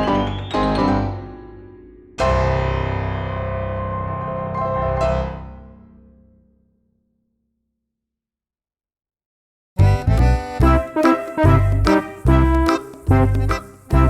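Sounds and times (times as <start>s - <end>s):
piano music: 0.0s - 5.8s, 9.8s - 14.0s.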